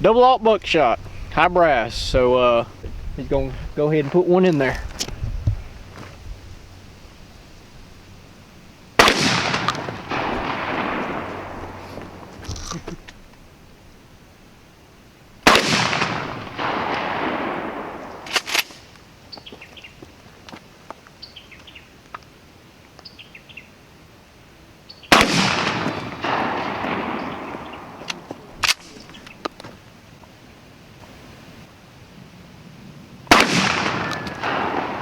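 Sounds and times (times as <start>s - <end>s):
shotgun blasts echoing: 9.0s - 12.3s, 15.4s - 18.8s, 25.1s - 29.1s, 33.3s - 35.0s.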